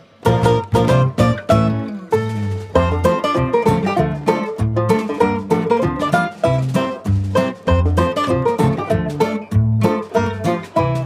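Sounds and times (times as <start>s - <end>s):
plucked-string bluegrass music: 0.0s - 11.0s.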